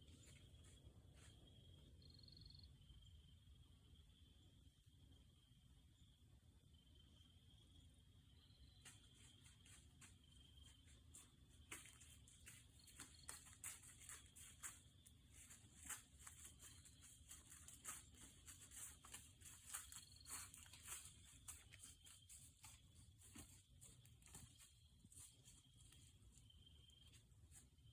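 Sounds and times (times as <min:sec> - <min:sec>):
high insect trill: 0:08.3 - 0:27.9
dry leaves crackling: 0:11.9 - 0:26.1.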